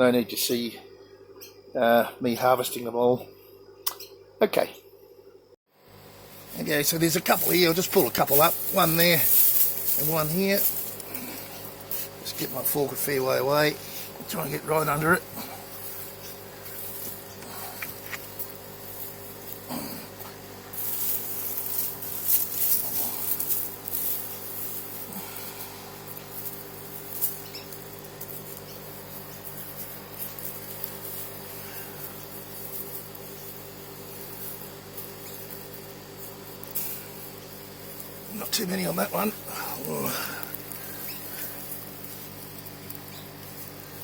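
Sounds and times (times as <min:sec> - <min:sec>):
steady low hum: 0:00.0 - 0:44.0
rustling of soil and foliage: 0:06.2 - 0:44.0
garden fork digging into soil: 0:20.7 - 0:25.4.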